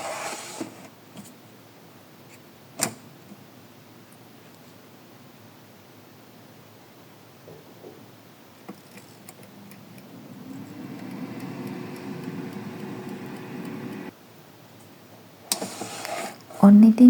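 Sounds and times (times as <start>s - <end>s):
air fryer fan humming: 9.2s - 14.1s.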